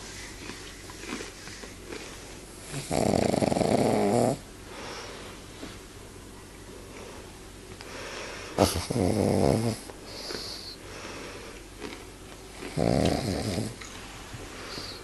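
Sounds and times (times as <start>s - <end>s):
dog snoring: 2.6s - 4.4s, 8.6s - 10.8s, 12.6s - 13.8s, 14.6s - 15.0s
dog breathing with hissing: 8.2s - 11.6s, 14.5s - 15.0s.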